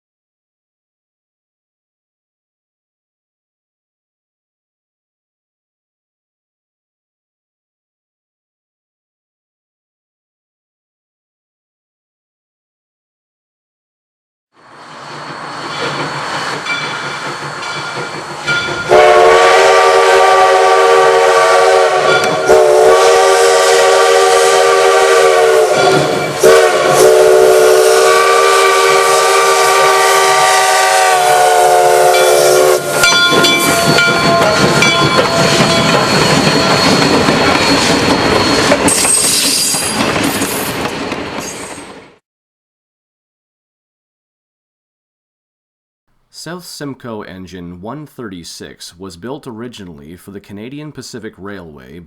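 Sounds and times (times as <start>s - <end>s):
train running noise: 14.6s - 30.5s, 31.2s - 42.1s
steam whistle blast: 18.9s - 36.0s.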